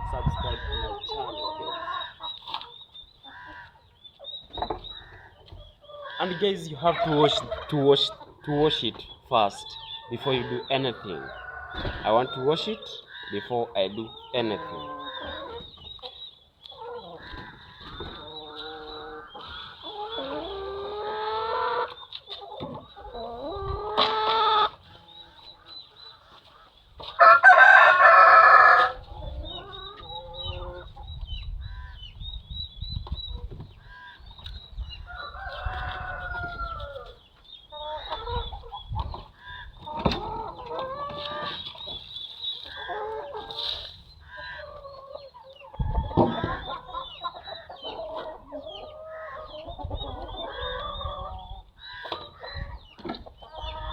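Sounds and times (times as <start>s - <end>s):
chickens clucking: 0.0s - 53.9s
rooster crowing: 27.2s - 29.0s.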